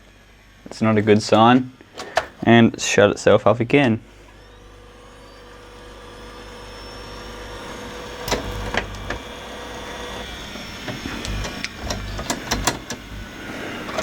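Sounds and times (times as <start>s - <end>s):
tape mechanism whirring: 4.3s - 14.0s
sharp mechanical clicks: 10.9s - 13.3s.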